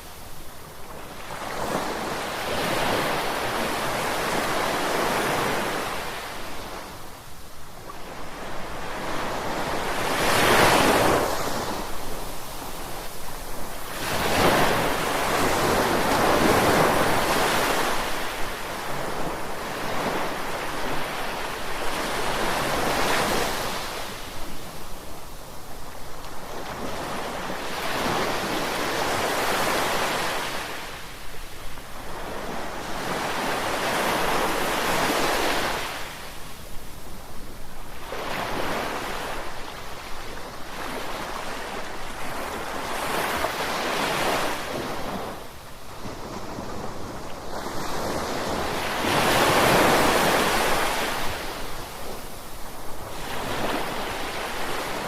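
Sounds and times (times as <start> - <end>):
surf breaking on a beach: 37.2 - 55.0.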